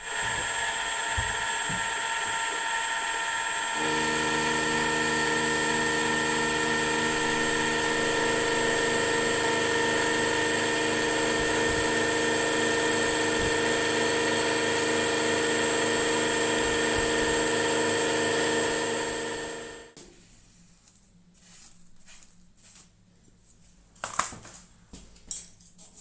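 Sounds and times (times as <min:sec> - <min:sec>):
high-pitched machine whine: 0:00.0 - 0:20.0
milling machine drone: 0:00.0 - 0:20.0.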